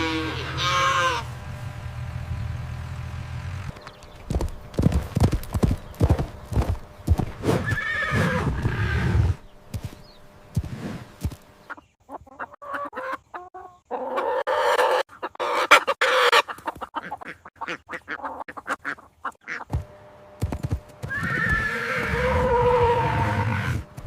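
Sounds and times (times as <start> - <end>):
chickens clucking: 0.0 - 1.5, 3.2 - 24.0
horse calling: 0.0 - 1.5, 3.5 - 11.6, 20.5 - 24.0.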